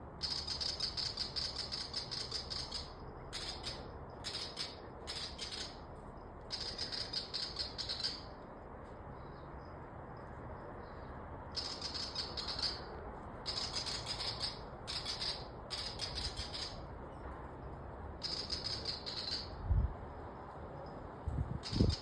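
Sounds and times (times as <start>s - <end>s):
bird rattling scolding calls: 0.2s - 5.9s, 6.5s - 8.4s, 11.5s - 16.9s, 18.2s - 19.6s, 21.6s - 22.0s.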